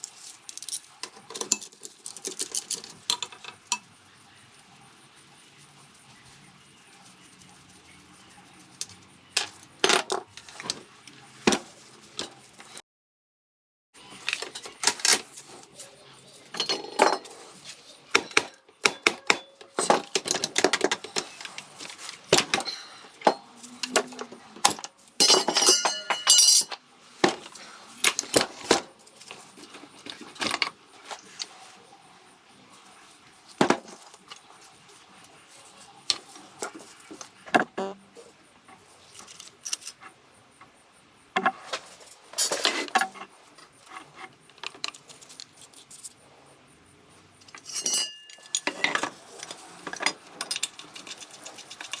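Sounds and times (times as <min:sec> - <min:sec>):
metal tools clinking and knocking: 0:00.0 - 0:03.9, 0:08.8 - 0:10.8, 0:16.4 - 0:31.5, 0:47.4 - 0:52.0.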